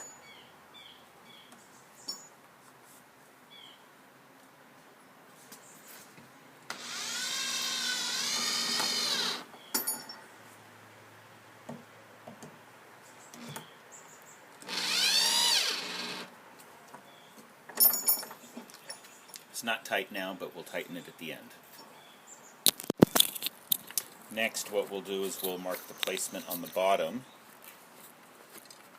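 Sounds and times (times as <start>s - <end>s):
cordless drill driving screws: 6.7s - 9.5s, 14.6s - 16.3s.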